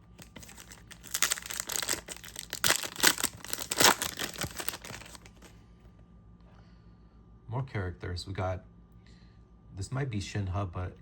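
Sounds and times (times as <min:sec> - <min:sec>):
wrapper tearing and crinkling: 0:00.0 - 0:05.5.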